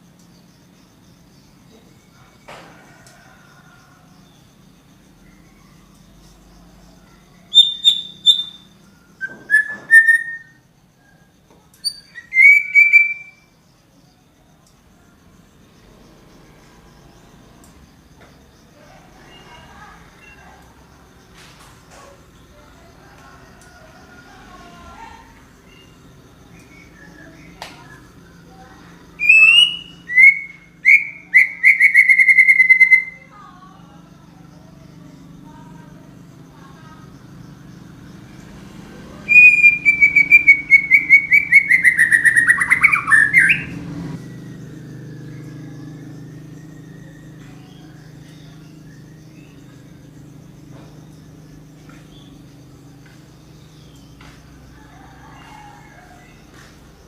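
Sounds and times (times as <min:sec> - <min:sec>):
songbird singing: 0:00.0 - 0:57.0
faint bird calls: 0:05.3 - 0:13.5, 0:23.5 - 0:51.0
songbird singing whistled phrases: 0:07.5 - 0:10.6, 0:11.8 - 0:13.5, 0:29.2 - 0:33.3, 0:39.3 - 0:43.8.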